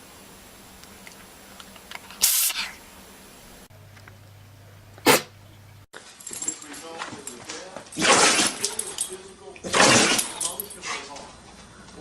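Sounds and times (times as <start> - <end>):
low steady hum: 0.0 - 5.9
animal sneezing: 5.0 - 5.4.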